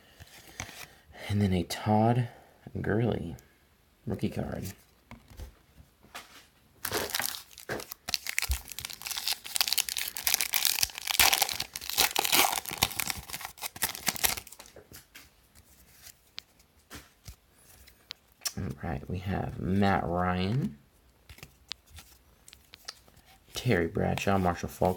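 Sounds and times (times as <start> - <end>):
wrapper tearing and crinkling: 6.8 - 14.7.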